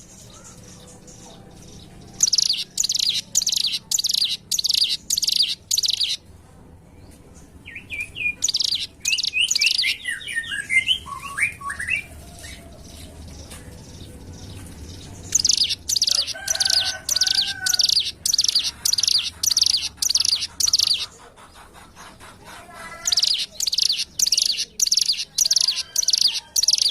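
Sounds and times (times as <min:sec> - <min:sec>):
buzzy bird trills: 0:02.0 - 0:06.2, 0:08.2 - 0:13.0, 0:15.2 - 0:21.7, 0:23.0 - 0:26.9
bird chirping descending notes: 0:02.2 - 0:06.2, 0:07.7 - 0:21.0.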